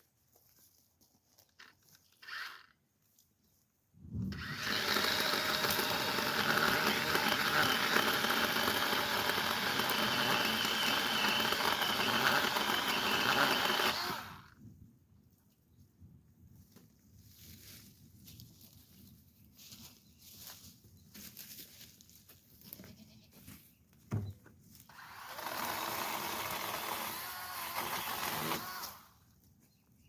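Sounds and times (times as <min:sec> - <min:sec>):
power saw cutting wood: 0:04.3 - 0:14.5, 0:24.9 - 0:29.1.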